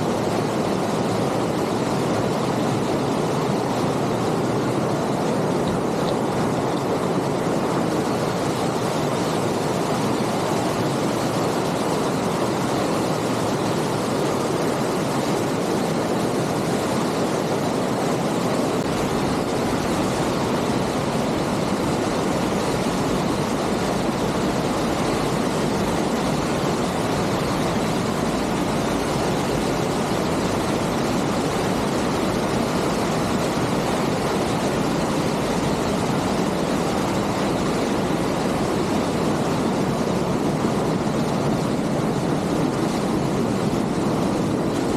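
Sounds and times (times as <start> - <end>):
waterfall rushing: 0.0 - 44.9.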